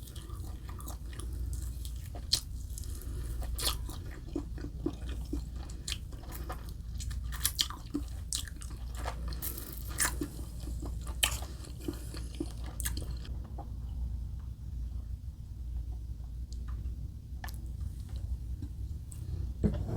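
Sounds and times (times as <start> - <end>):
chewing crunchy breaded chicken: 0.0 - 13.8.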